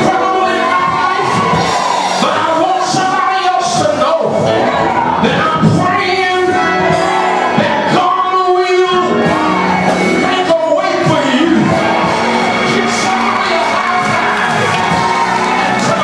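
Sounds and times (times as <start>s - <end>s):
person singing loudly: 5.2s - 16.0s
instrumental accompaniment: 8.9s - 16.0s.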